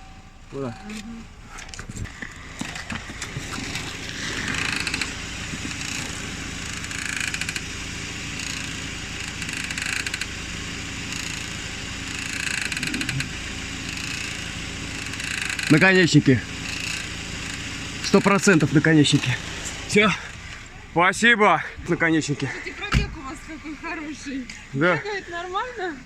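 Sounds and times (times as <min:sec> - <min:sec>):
steady low hum: 0:00.0 - 0:26.0
tie rod end squeaking: 0:00.0 - 0:26.0.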